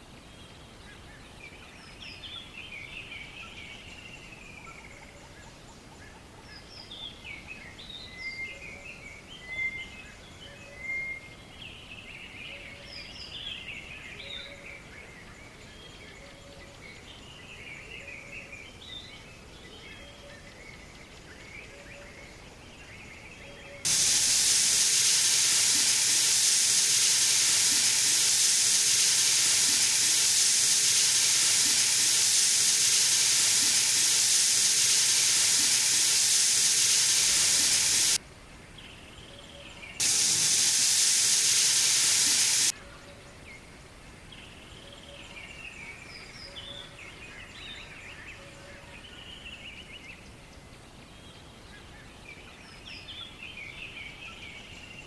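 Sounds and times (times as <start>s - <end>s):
faint birds chirping: 22.8s - 38.2s, 39.7s - 42.7s
cooking hissing: 23.9s - 38.2s, 40.0s - 42.7s.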